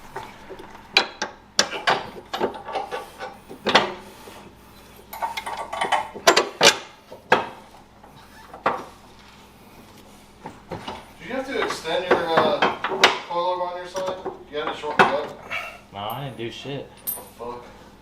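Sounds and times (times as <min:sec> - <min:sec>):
metal tools clanking: 0:13.9 - 0:17.7.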